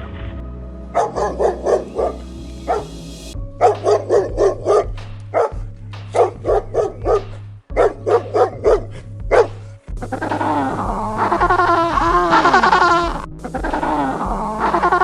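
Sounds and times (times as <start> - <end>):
background music: 0.0 - 15.0
dog barking: 1.0 - 2.9, 3.6 - 5.6, 6.2 - 9.5.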